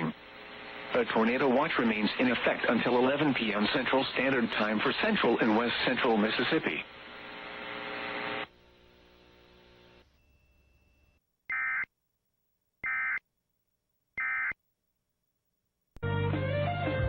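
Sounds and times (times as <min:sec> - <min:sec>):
buzzing hum: 0:06.8 - 0:14.6.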